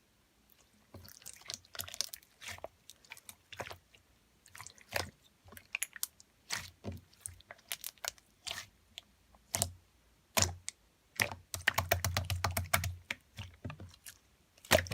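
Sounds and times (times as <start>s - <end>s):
slime squished by hand: 4.5s - 14.9s.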